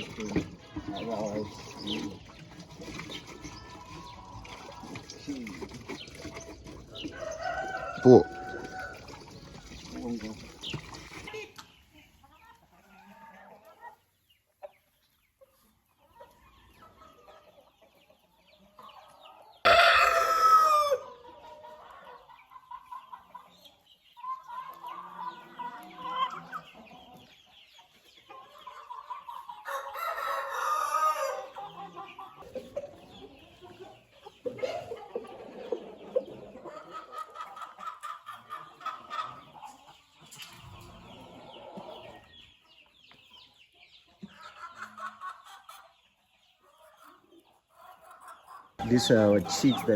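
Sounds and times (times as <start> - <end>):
chickens clucking: 0.0 - 49.9
rooster crowing: 7.1 - 9.1, 19.6 - 21.1.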